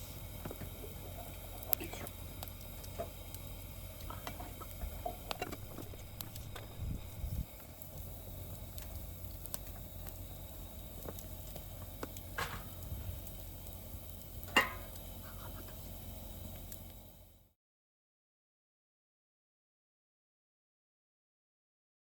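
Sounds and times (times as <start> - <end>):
wood fire crackling: 0.0 - 17.5
low rumble: 5.3 - 7.6.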